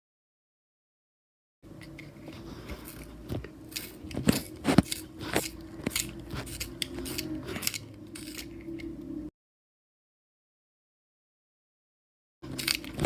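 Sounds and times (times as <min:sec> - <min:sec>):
low steady hum: 0:01.6 - 0:09.3
crisp crunching clicks: 0:12.5 - 0:13.0.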